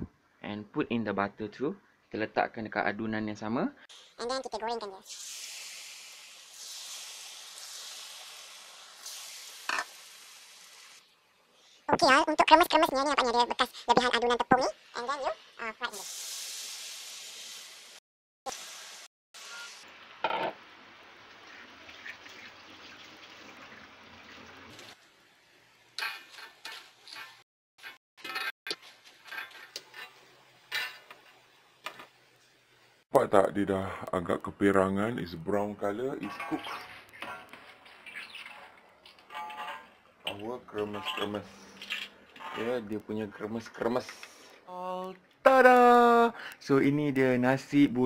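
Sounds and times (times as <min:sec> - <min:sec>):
tofu sizzling in hot oil: 0:05.0 - 0:11.1, 0:14.6 - 0:21.9.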